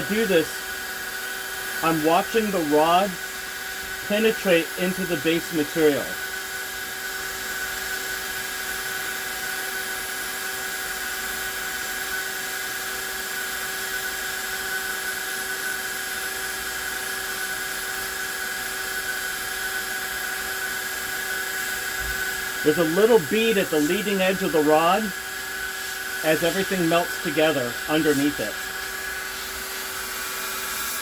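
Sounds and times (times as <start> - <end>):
heat gun fan whine: 0.0 - 31.0
hiss of blowing air: 21.7 - 31.0.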